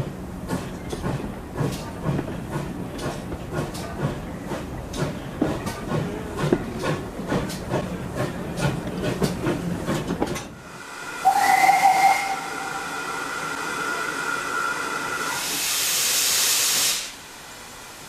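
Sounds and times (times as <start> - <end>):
steam locomotive chuffing: 0.0 - 18.0
loud hiss of steam: 10.6 - 18.0
steam whistle blast: 11.1 - 17.2.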